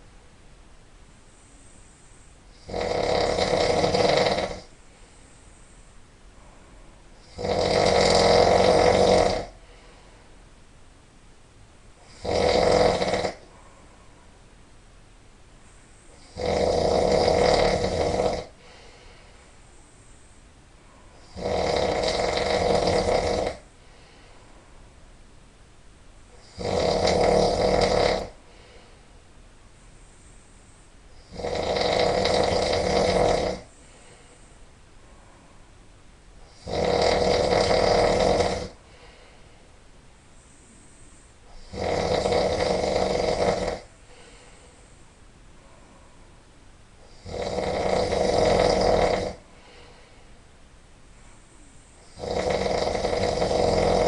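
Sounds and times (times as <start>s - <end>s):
faint breathing: 1.2s - 3.0s, 3.9s - 7.4s, 9.4s - 12.2s, 13.3s - 26.6s, 28.3s - 31.3s, 32.0s - 36.6s, 37.5s - 54.0s
person snoring loudly: 2.5s - 4.7s, 7.2s - 9.8s, 12.0s - 13.5s, 16.1s - 18.9s, 21.2s - 23.7s, 26.4s - 28.7s, 31.2s - 34.2s, 36.4s - 39.2s, 41.5s - 44.6s, 47.0s - 50.0s, 52.0s - 54.0s.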